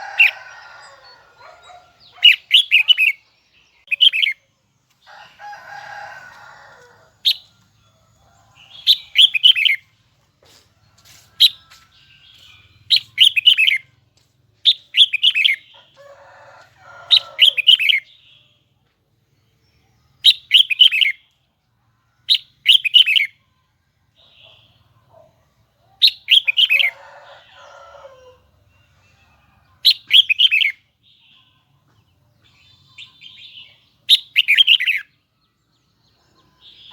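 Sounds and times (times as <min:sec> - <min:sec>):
bird singing high phrases: 0:00.0 - 0:04.5, 0:08.6 - 0:09.9, 0:11.4 - 0:14.0, 0:14.6 - 0:16.0, 0:19.4 - 0:21.3, 0:22.3 - 0:23.4, 0:28.7 - 0:31.7.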